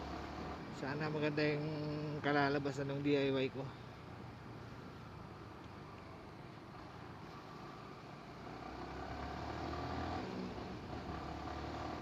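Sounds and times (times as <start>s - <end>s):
road noise: 0.0s - 12.0s
motorcycle engine: 6.2s - 12.0s.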